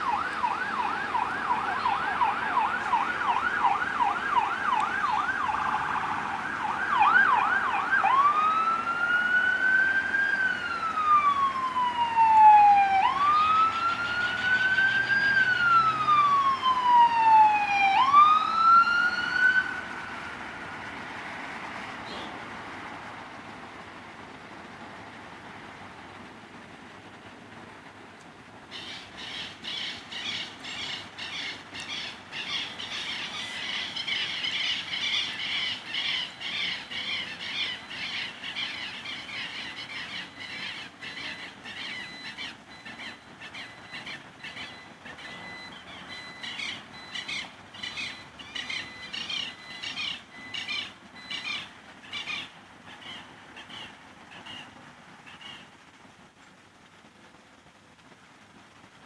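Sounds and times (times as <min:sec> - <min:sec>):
fire engine siren yelping: 0:00.0 - 0:25.7, 0:28.7 - 0:54.2.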